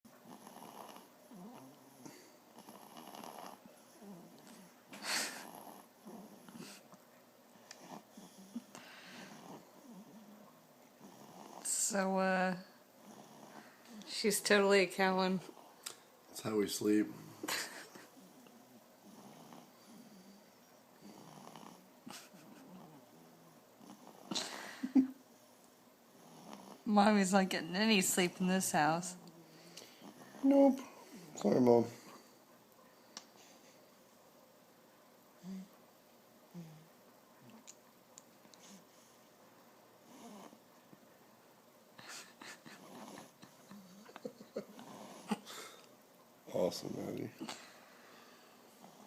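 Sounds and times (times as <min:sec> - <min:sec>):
baby snoring faintly: 0:00.2 - 0:06.9, 0:35.4 - 0:35.8, 0:36.5 - 0:37.0.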